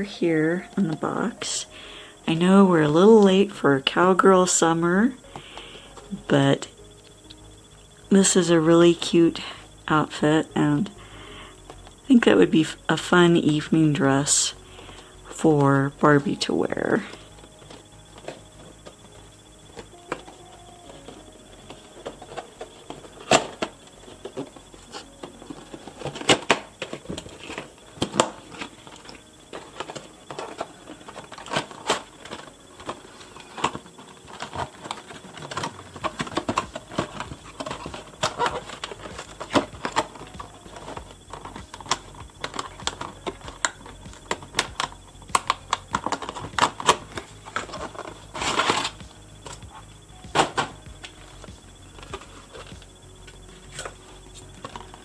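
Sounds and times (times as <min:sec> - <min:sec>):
packaging being handled: 0:16.2 - 0:55.0.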